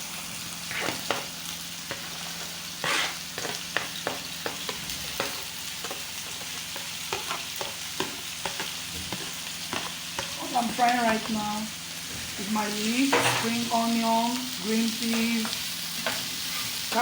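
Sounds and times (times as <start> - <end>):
vegetables sizzling in oil: 0.0 - 17.0
utensil scraping pan: 0.7 - 1.3, 1.9 - 11.4, 16.0 - 17.0.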